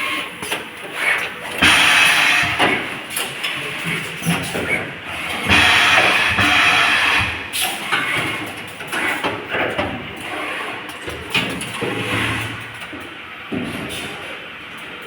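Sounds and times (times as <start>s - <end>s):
pneumatic air hisses: 1.6s - 2.9s
sharp machine clacks: 1.6s - 3.3s.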